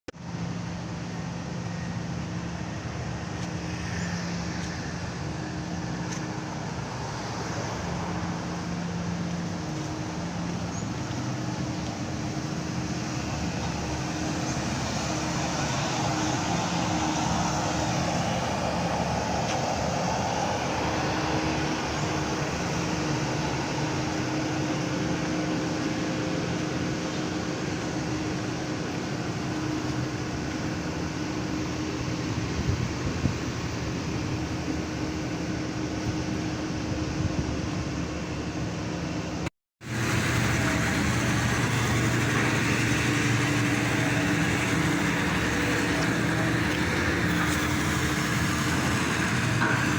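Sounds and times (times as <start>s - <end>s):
pile driver engine hum: 0.1s - 49.9s.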